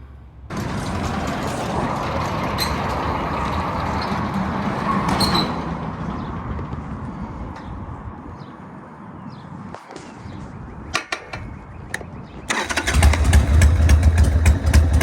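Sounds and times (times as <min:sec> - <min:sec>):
motorcycle engine running: 0:12.5 - 0:15.0.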